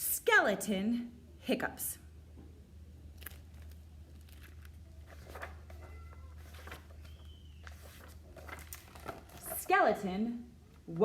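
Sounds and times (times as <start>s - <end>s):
low steady hum: 0.0s - 11.0s
book pages turning: 3.1s - 9.7s.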